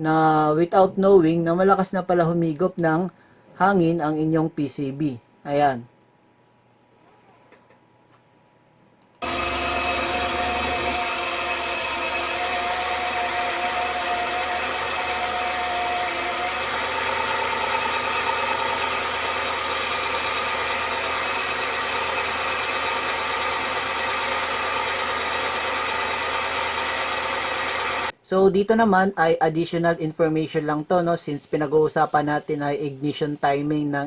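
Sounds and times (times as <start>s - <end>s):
engine idling: 9.2s - 28.1s.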